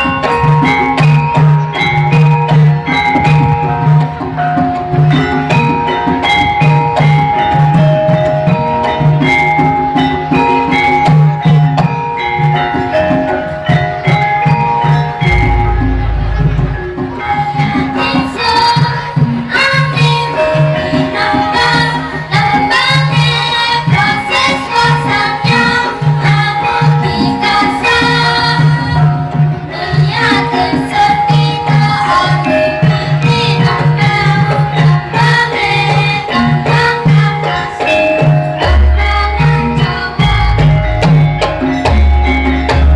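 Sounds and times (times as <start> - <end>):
gamelan ensemble playing: 0.0 - 42.9
voices singing: 12.0 - 42.9
drum strokes: 15.2 - 18.4.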